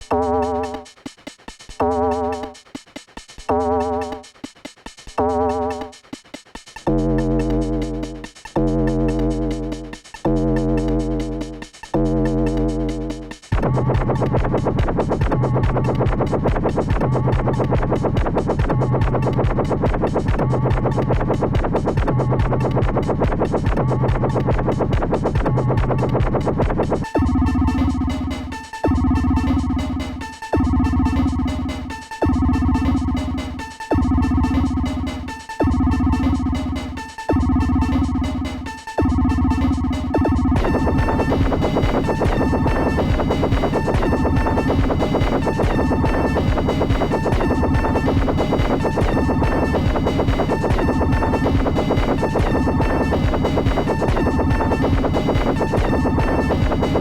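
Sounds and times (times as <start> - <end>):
drum machine hits: 6.8 - 27.0, 40.2 - 57.0
low bass: 6.9 - 28.3, 39.0 - 57.0
electronic dance music: 12.3 - 57.0.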